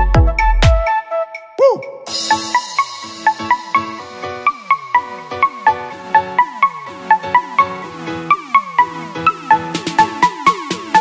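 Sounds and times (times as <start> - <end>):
low bass beat: 0.0 - 0.9.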